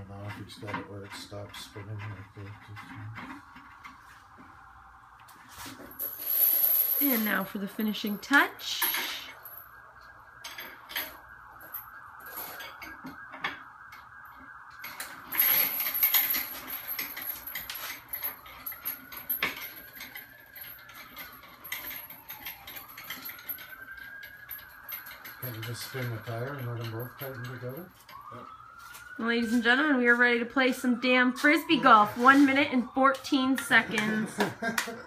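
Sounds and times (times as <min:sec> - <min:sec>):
distant siren wailing: 0:00.0 - 0:35.0
metal parts clinking and clattering: 0:05.9 - 0:09.6, 0:14.8 - 0:28.2.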